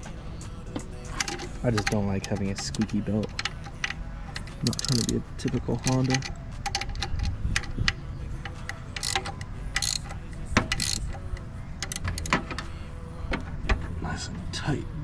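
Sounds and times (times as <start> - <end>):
belt squeaking: 0.7 - 12.8
metallic clinks of hand tools: 1.0 - 12.7.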